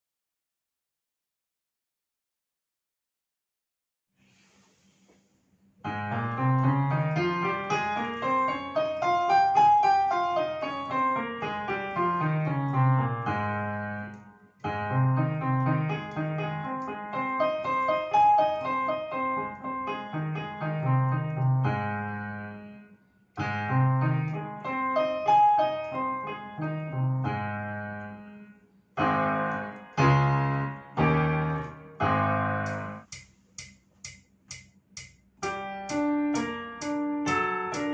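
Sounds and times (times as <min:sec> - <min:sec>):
piano music: 0:05.9 - 0:33.2, 0:35.4 - 0:37.9.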